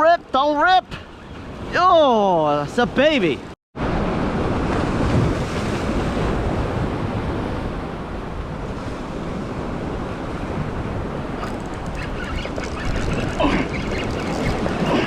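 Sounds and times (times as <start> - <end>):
wind buffeting microphone: 3.9 - 15.0.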